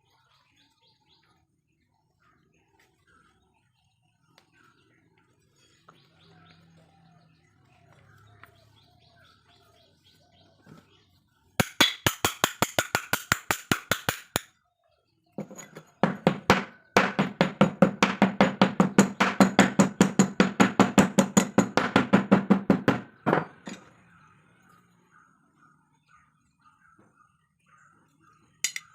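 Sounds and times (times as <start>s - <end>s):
faint bird chirps: 0.0s - 11.6s, 23.1s - 28.9s.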